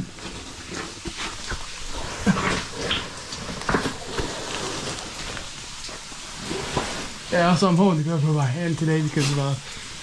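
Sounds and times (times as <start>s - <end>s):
scuffs and knocks in cave: 0.0s - 7.2s
water splashes: 0.0s - 10.0s.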